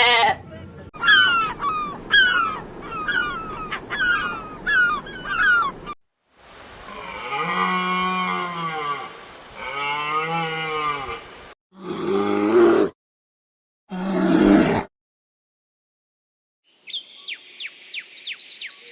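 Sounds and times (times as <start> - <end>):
high falling animal calls: 0.9 - 6.0, 6.6 - 13.0
cow mooing: 6.9 - 11.2, 11.8 - 12.9.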